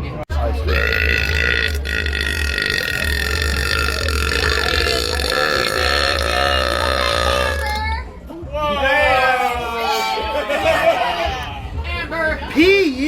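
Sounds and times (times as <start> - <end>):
woman burping: 0.6 - 7.9.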